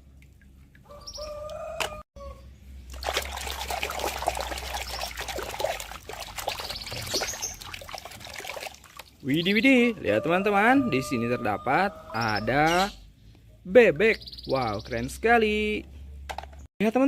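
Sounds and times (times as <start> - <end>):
water trickling and splashing: 0.0 - 1.1, 2.8 - 9.6.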